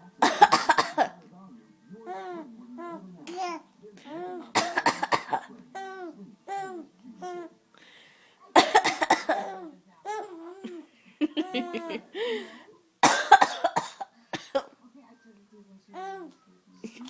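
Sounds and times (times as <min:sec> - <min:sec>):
woman coughing: 0:00.2 - 0:01.2, 0:04.6 - 0:05.5, 0:08.6 - 0:09.6, 0:13.0 - 0:14.7
baby giggling: 0:10.1 - 0:12.1.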